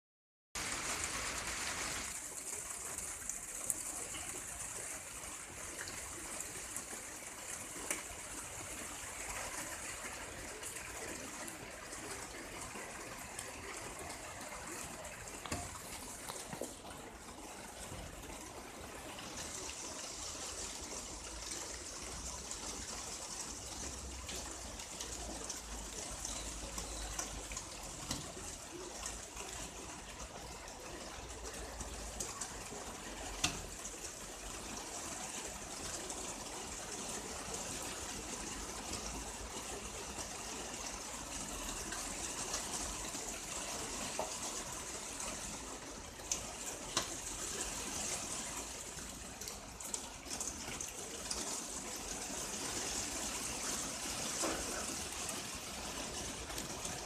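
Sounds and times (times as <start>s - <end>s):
fine rain hissing: 0.6s - 29.6s, 50.8s - 57.0s.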